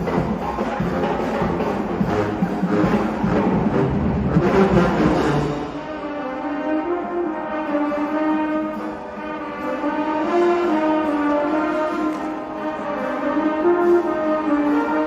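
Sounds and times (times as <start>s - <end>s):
brass background music: 0.0s - 15.0s.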